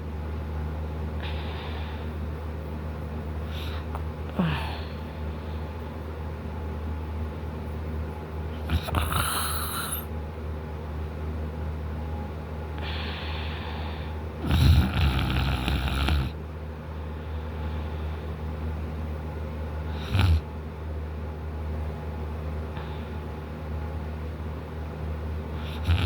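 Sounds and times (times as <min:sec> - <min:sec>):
man snoring: 0:08.7 - 0:10.1, 0:14.4 - 0:16.4, 0:19.9 - 0:20.4, 0:25.6 - 0:26.0
short snort: 0:08.7 - 0:10.1
breathy hiss of breath: 0:12.8 - 0:14.2.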